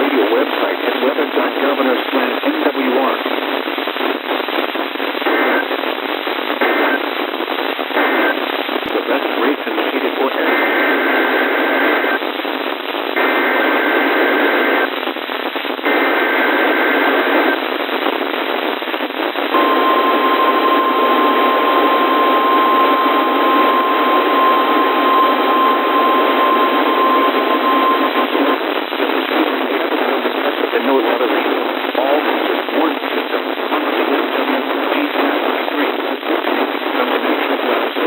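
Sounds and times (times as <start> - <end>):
receiver static: 0.0 - 38.0
steady warning alarm tone: 19.5 - 28.6
two-tone data signal bursts: 19.5 - 28.8.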